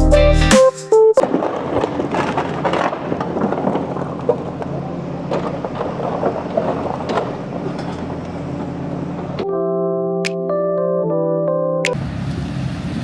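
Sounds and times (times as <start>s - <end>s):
rattling scraping clatter: 1.3s - 9.4s
engine running: 2.2s - 9.8s, 12.0s - 13.0s.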